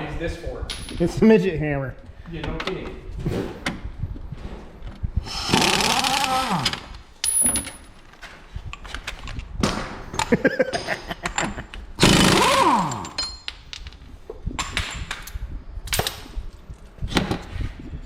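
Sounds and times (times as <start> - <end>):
pneumatic impact wrench: 5.2 - 6.9, 12.0 - 13.2.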